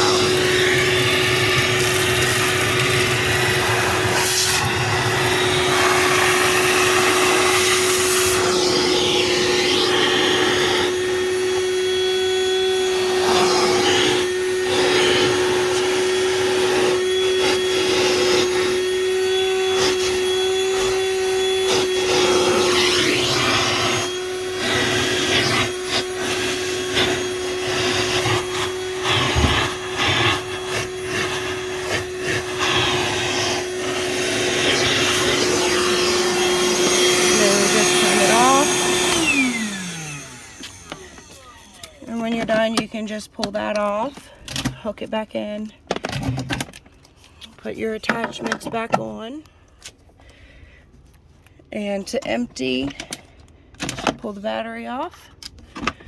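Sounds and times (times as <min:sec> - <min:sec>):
vacuum hose sucking up debris: 0:00.0 - 0:42.3
shop vacuum motor whine: 0:00.0 - 0:44.8.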